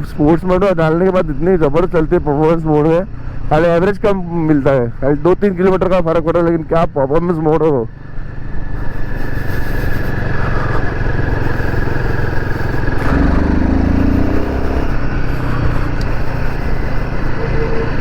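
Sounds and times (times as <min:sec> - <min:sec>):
motorcycle engine running: 0:07.9 - 0:18.0.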